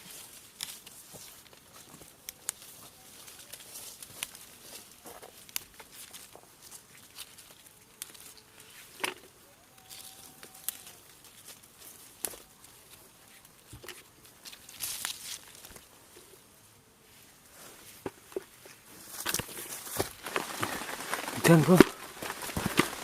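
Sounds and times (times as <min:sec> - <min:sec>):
leaves rustling: 0:00.0 - 0:23.0
plant stems snapping: 0:09.8 - 0:11.6, 0:13.8 - 0:15.8.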